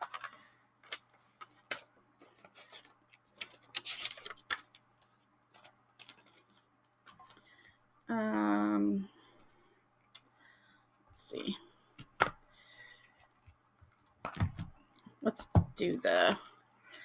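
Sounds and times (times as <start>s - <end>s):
packaging rustle: 0.0s - 7.8s
packaging taps and clicks: 13.2s - 16.5s.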